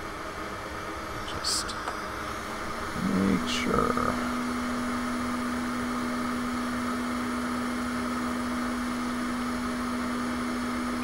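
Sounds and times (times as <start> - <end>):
hot air station blowing hum: 0.0 - 11.0.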